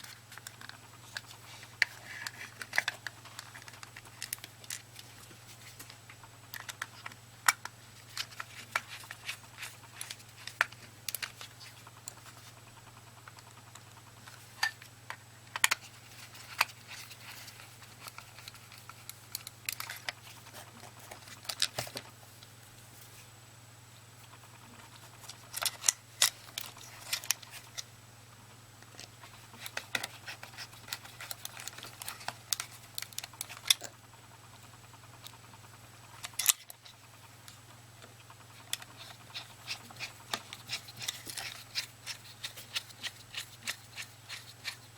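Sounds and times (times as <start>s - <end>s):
plastic mouse parts clicking: 0.0s - 12.2s, 13.3s - 22.1s, 24.9s - 27.9s, 28.8s - 34.0s, 38.2s - 44.9s.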